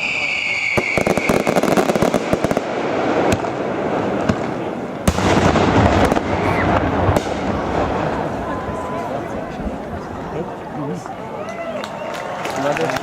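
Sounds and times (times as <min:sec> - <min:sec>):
fireworks bang: 0:00.0 - 0:10.3
fireworks rumbling: 0:00.0 - 0:12.1
fireworks crackling: 0:00.0 - 0:13.0.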